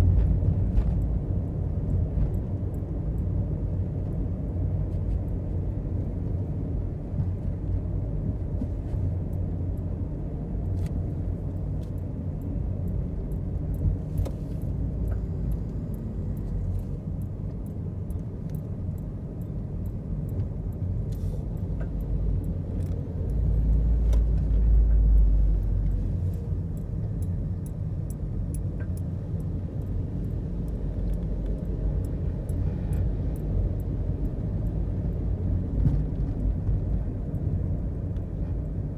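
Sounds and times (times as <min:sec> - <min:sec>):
car road rumble: 0:00.0 - 0:38.9.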